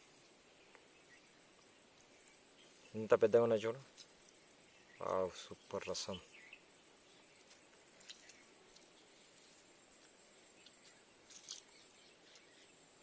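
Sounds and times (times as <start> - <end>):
faint background hiss: 0.0 - 13.0
thin steady high tone: 0.0 - 13.0
faint ticks: 7.4 - 12.8.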